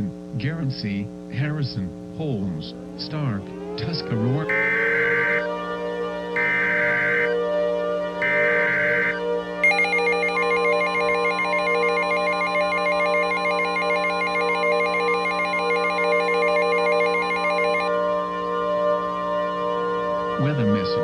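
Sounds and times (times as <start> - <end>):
quiet ambient music: 0.3 - 21.0
harsh digital data buzz: 4.2 - 5.4, 6.4 - 7.4, 8.2 - 17.9
two-tone attention signal: 4.5 - 5.4, 6.4 - 7.4, 8.2 - 17.9.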